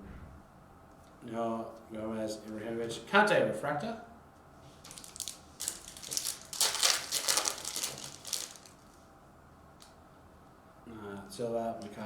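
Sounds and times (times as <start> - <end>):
foil wrapper crinkling: 4.8 - 9.0.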